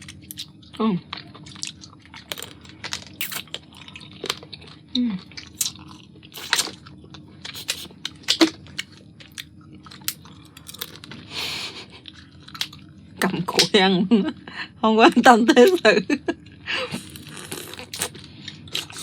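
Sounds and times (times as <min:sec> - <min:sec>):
wet chewing: 0:00.0 - 0:12.9, 0:16.9 - 0:19.0
shell cracking and crunching: 0:01.5 - 0:04.6, 0:07.5 - 0:11.2.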